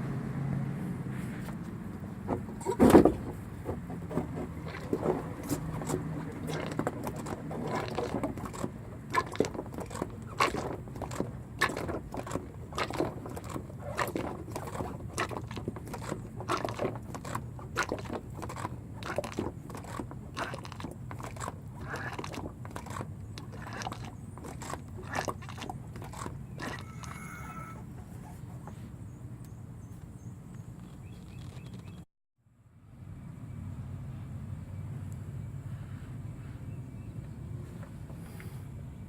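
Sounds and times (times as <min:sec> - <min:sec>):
clicking and scraping: 0:01.3 - 0:32.0.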